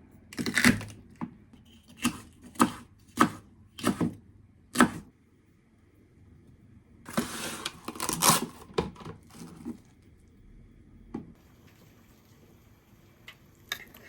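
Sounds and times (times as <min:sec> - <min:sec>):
rustling and scraping: 0:07.1 - 0:10.0.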